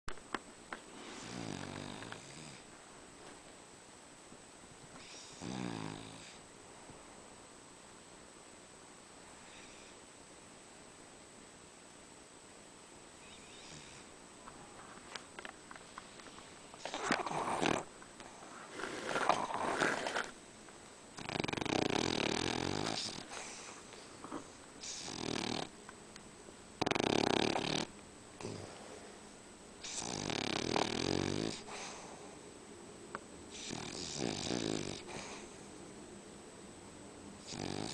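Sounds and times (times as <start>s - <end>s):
pet snoring: 1.0s - 2.7s, 5.0s - 6.4s, 13.2s - 14.1s, 16.8s - 20.4s, 21.2s - 25.7s, 26.8s - 28.8s, 29.8s - 32.0s, 33.5s - 35.6s, 37.4s - 37.9s.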